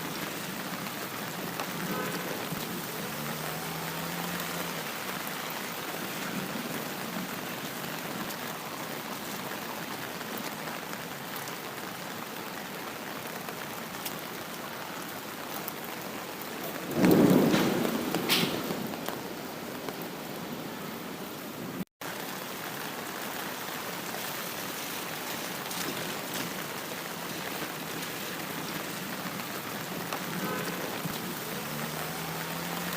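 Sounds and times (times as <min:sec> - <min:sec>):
steady rain falling: 0:00.0 - 0:32.9
thunder clap: 0:16.7 - 0:19.3.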